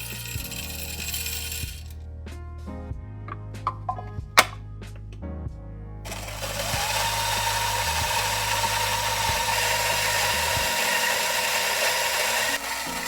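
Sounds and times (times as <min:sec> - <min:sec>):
coffee grinder grinding beans: 0:00.0 - 0:01.9, 0:06.1 - 0:13.0.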